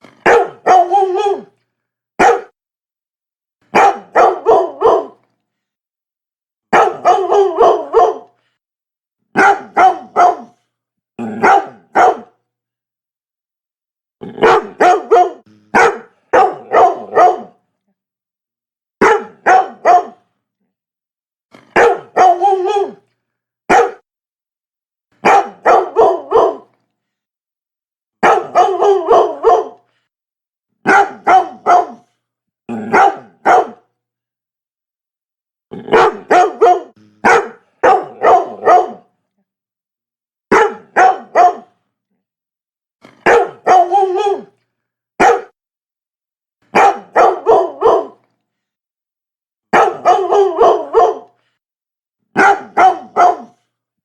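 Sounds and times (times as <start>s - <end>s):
dog barking: 0.1s - 1.5s, 2.2s - 2.6s, 3.7s - 5.2s, 6.7s - 8.4s, 9.4s - 10.6s, 11.3s - 12.4s, 14.4s - 17.6s, 19.0s - 20.3s, 21.6s - 23.0s, 23.7s - 24.0s, 25.2s - 26.7s, 28.2s - 29.9s, 30.8s - 32.1s, 32.7s - 33.9s, 35.8s - 39.1s, 40.5s - 41.8s, 43.0s - 44.5s, 45.2s - 45.6s, 46.7s - 48.2s, 49.7s - 51.4s, 52.3s - 53.7s.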